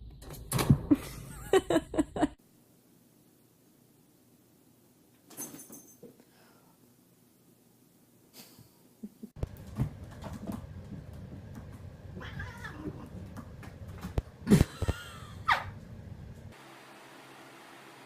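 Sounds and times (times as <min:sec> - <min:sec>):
cat meowing and yowling: 0:12.2 - 0:13.1.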